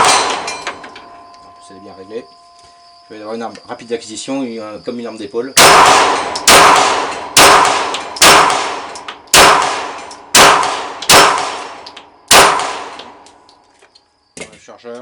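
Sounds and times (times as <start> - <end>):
pistol shots: 0.0 - 0.8, 5.6 - 13.2
metallic ringing: 0.0 - 4.3.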